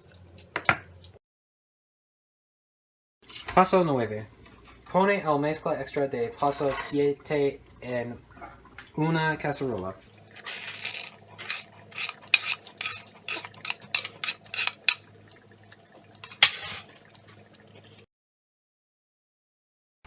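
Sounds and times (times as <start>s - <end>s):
utensil scraping and clinking dishes: 3.2s - 3.6s, 10.3s - 15.0s, 16.2s - 17.0s.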